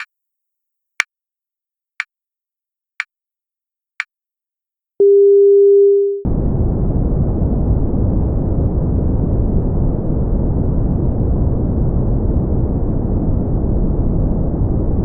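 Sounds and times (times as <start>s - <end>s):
low beep: 5.0s - 6.2s
brown noise rumbling hiss: 6.3s - 15.0s.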